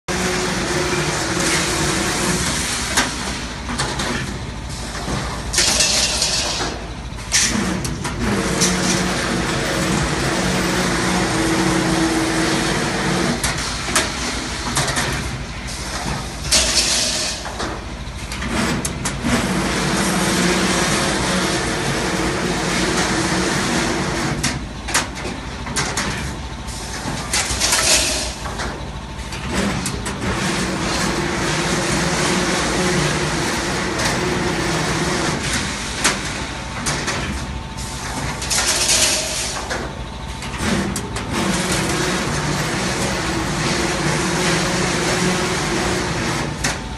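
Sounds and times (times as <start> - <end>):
bending machine motor hum: 0.1 - 46.9
machine clicks and knocks: 24.4 - 26.3.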